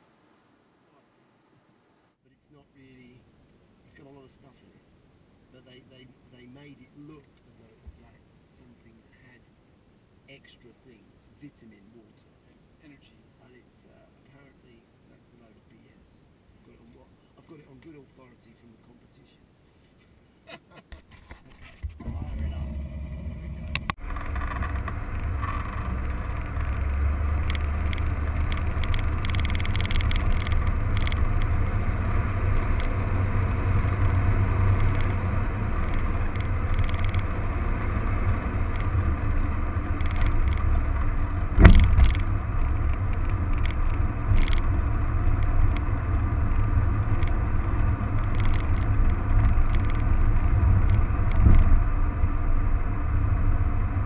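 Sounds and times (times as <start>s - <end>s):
car engine rumbling: 21.8s - 54.0s
sharp thump: 41.5s - 42.2s, 51.4s - 51.8s.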